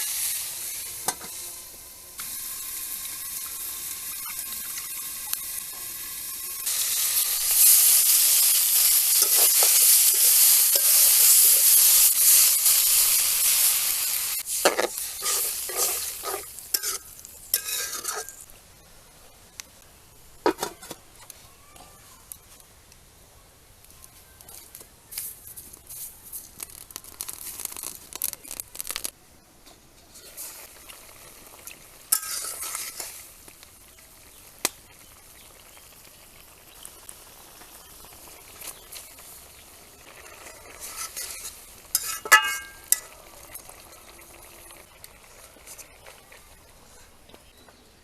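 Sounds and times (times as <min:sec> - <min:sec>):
light sizzling: 0:00.0 - 0:23.2, 0:23.8 - 0:48.0
spatula scraping cooking pan: 0:06.6 - 0:18.5, 0:32.1 - 0:33.3, 0:40.0 - 0:43.2
spatula clinking on pan: 0:42.0 - 0:43.1.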